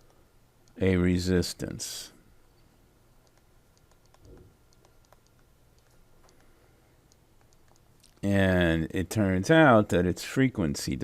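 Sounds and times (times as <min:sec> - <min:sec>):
stylus tapping on tablet screen: 0:03.2 - 0:06.5, 0:07.1 - 0:07.9.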